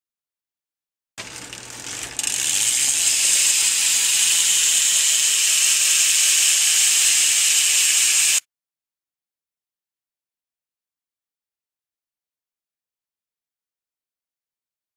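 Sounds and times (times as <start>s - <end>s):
bicycle hub freewheeling buzz: 1.2s - 8.4s.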